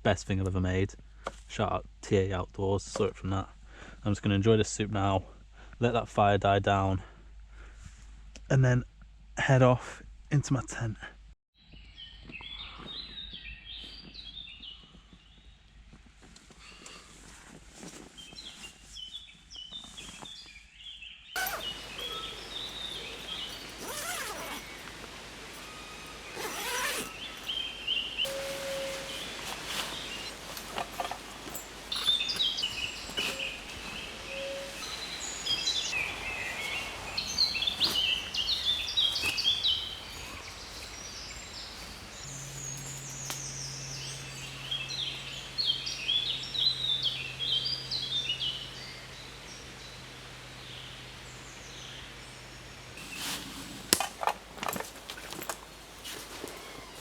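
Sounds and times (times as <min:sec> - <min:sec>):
songbird chirping: 0:18.2 - 0:57.0.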